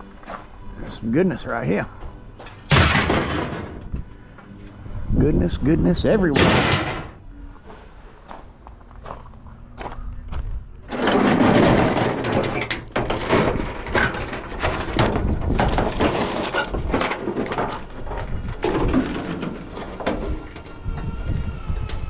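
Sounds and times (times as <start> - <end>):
scrap metal clattering and scraping: 2.4 - 4.0, 6.3 - 7.2, 10.8 - 20.8.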